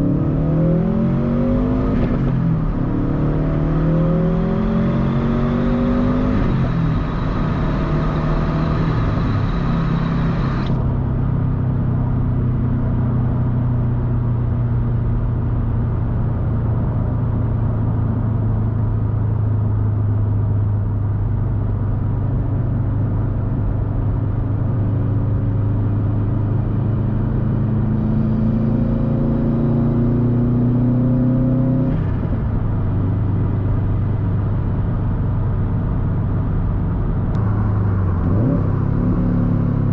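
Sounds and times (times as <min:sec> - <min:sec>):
car engine driving: 0:00.0 - 0:39.9.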